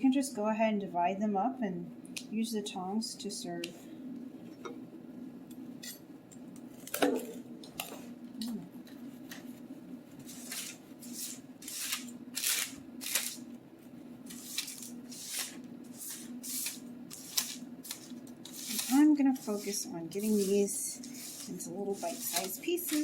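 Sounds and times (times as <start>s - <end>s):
knife cutting on cutting board: 14.3s - 23.0s.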